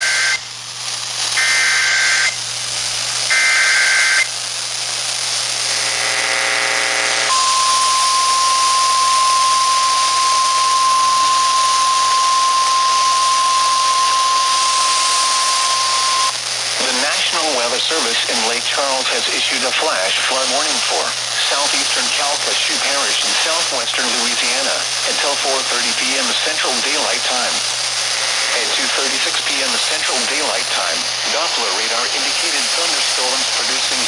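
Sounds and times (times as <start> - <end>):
steady warning alarm tone: 0.0 - 0.4, 1.4 - 2.4, 3.3 - 4.3, 7.3 - 16.4
two-pitch data screech: 1.4 - 2.4, 3.3 - 4.3, 7.3 - 16.4.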